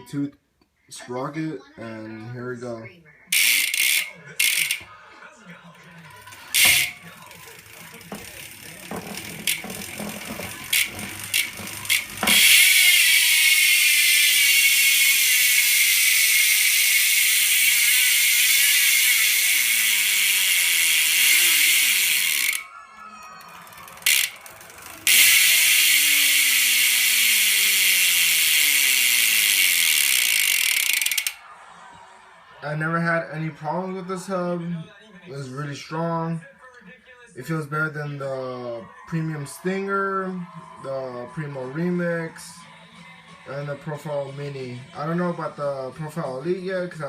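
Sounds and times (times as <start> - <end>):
bicycle hub ratcheting buzz: 3.3 - 4.9, 6.1 - 22.7, 23.4 - 31.4.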